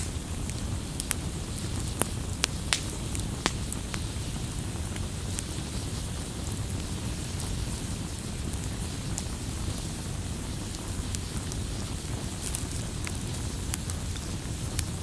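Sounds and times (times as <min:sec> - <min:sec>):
fire crackling and popping: 0:00.0 - 0:15.0
fire roaring: 0:00.0 - 0:15.0.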